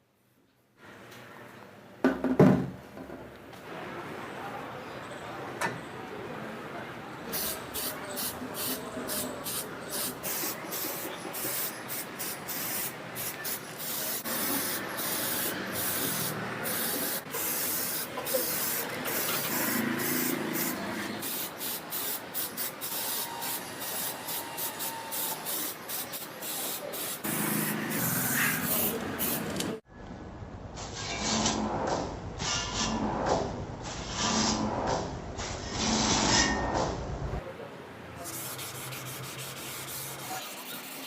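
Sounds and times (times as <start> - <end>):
spray paint hissing: 7.3 - 29.8, 38.2 - 41.0.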